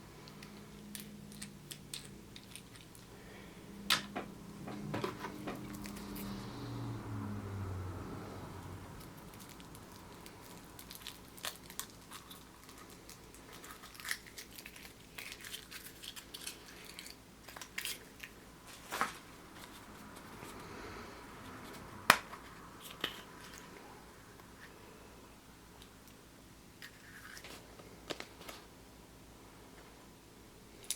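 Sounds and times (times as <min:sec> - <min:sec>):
foil crinkling: 0:09.3 - 0:19.9.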